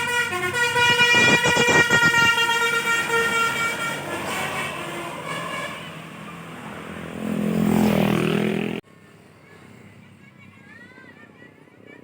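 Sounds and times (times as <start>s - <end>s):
short horn note: 0.0s - 2.7s
multi-tone bus horn tune: 0.0s - 6.1s
bus and traffic rumble: 0.0s - 12.0s.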